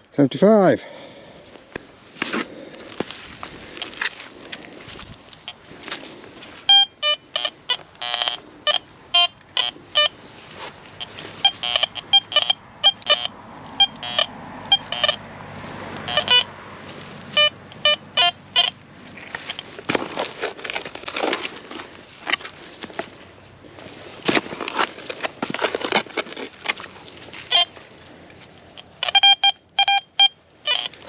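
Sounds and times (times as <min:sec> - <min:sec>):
metal detector beeps: 0:06.6 - 0:10.2, 0:11.0 - 0:15.2, 0:16.0 - 0:16.5, 0:17.3 - 0:19.7, 0:27.5 - 0:27.8, 0:28.4 - 0:31.0.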